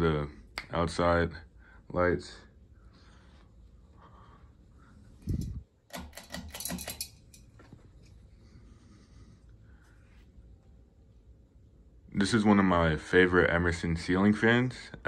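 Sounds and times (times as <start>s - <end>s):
ceiling fan humming: 0.0s - 15.0s
rapid clicking and rattling: 5.3s - 7.4s.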